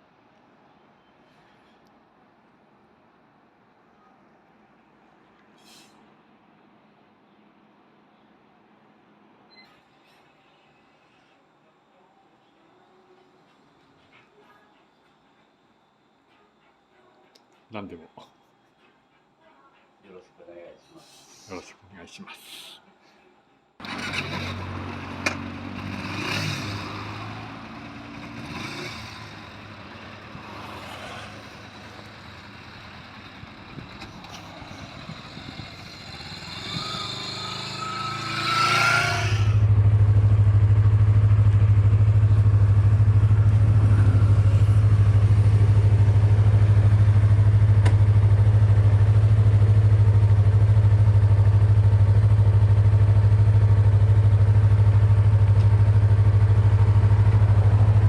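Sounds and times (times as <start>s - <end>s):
motorcycle engine cranking: 23.8s - 29.8s
motorcycle engine idling: 23.8s - 38.2s, 39.5s - 58.0s.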